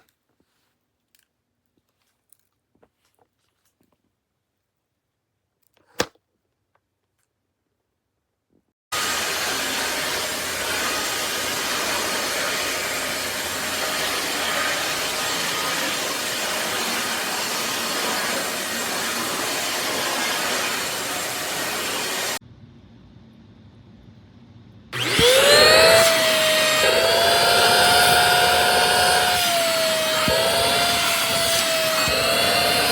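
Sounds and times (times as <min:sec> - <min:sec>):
vacuum cleaner running: 0:08.9 - 0:22.4, 0:25.0 - 0:32.9.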